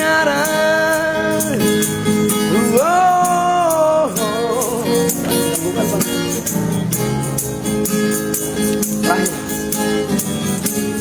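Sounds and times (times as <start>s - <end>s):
guitar accompaniment: 0.0s - 11.0s.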